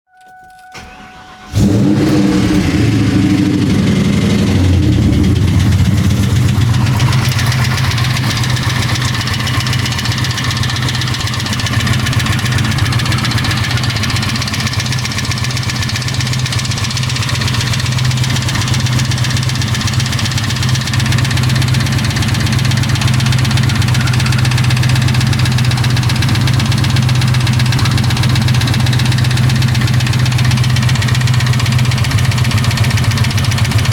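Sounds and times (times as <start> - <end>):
car engine starting and idling: 0.2 - 33.9
engine ticking: 0.8 - 33.9.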